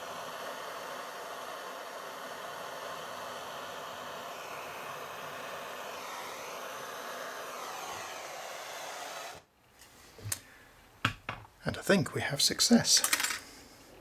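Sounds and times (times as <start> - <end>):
blow lamp flame hissing: 0.0 - 10.9.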